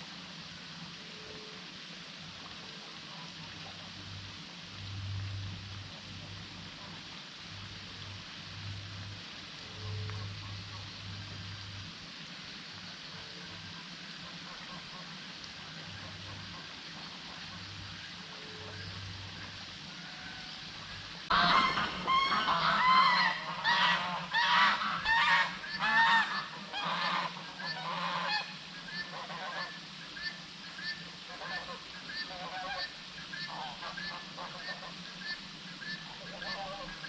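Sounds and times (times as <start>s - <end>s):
birds honking: 21.3s - 37.0s.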